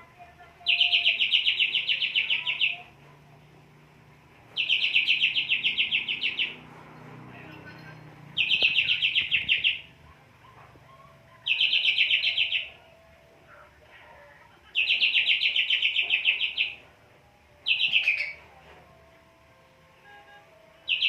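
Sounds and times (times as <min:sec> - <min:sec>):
bird singing trilled notes: 0:00.6 - 0:02.9, 0:04.6 - 0:06.7, 0:07.6 - 0:10.0, 0:11.3 - 0:12.9, 0:14.8 - 0:16.8, 0:17.6 - 0:18.5.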